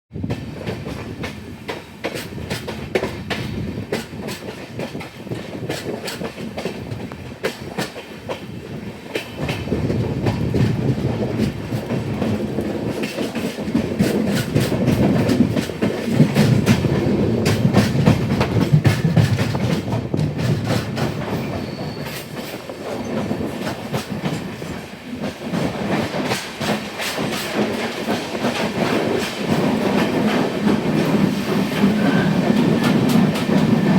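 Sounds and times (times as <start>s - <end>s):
train wheels clicking over rail joints: 0.2s - 33.9s.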